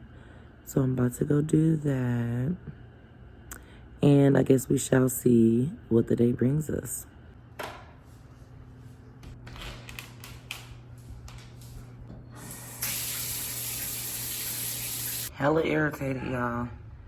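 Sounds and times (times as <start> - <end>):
spraying water hiss: 12.4 - 15.3.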